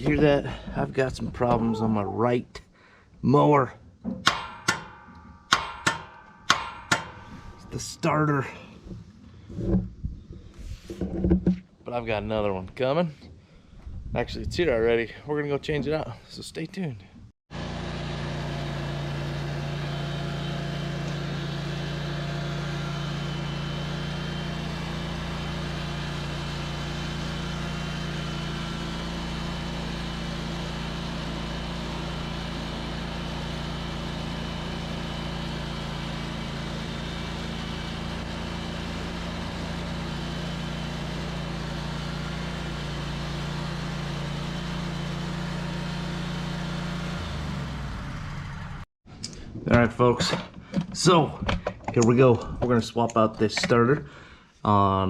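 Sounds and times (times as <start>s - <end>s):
engine humming steadily: 17.5s - 49.4s.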